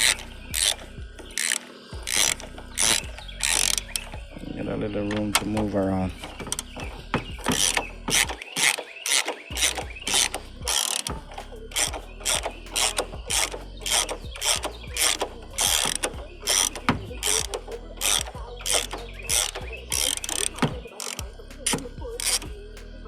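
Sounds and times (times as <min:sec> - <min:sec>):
ratchet wrench clicking: 0:00.0 - 0:04.2, 0:06.2 - 0:22.5.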